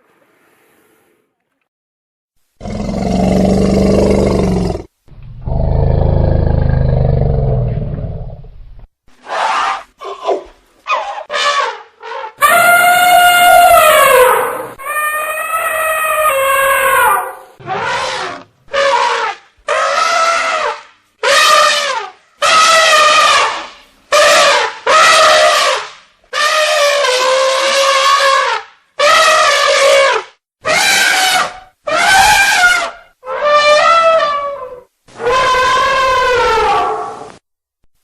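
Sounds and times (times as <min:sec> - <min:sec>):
elephant trumpeting: 0:10.9 - 0:37.3.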